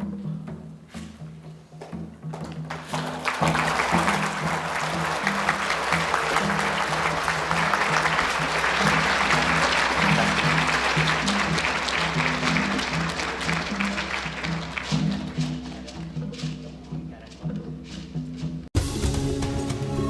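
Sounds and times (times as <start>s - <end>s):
music with low notes: 0.0s - 20.0s
audience applauding: 2.4s - 16.5s.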